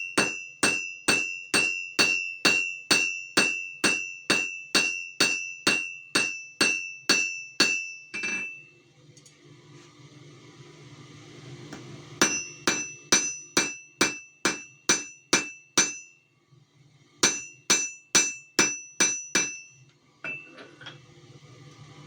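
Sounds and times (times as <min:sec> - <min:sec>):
hammer striking metal on anvil: 0:00.0 - 0:08.6, 0:12.2 - 0:16.1, 0:17.2 - 0:20.5.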